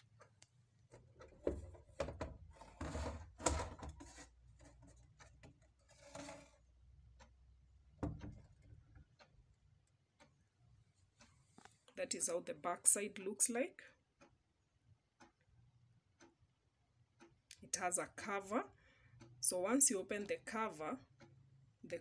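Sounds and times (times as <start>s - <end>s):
wall clock being handled: 0.0s - 9.5s.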